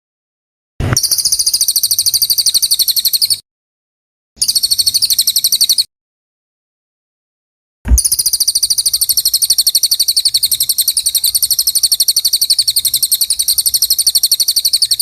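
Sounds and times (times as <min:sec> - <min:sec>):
songbird trilling: 0:01.0 - 0:03.4, 0:04.4 - 0:05.9, 0:08.0 - 0:15.0.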